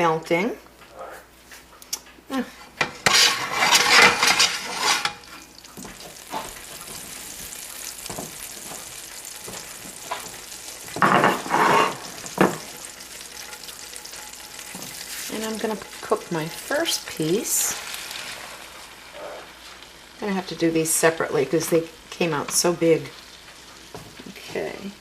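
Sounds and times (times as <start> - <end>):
butter and oil sizzling in a pan: 2.8 - 25.0.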